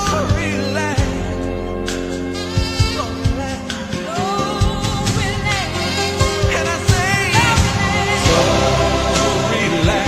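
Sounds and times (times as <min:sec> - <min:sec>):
band backing: 0:00.0 - 0:10.0
steady drum beat: 0:06.7 - 0:08.7
wordless wavering vocal: 0:06.7 - 0:09.8.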